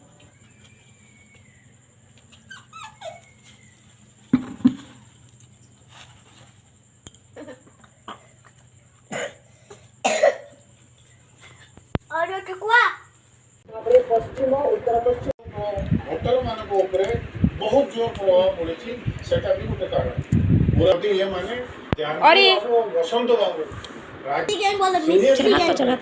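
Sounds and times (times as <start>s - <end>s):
dog whining: 2.2s - 4.0s.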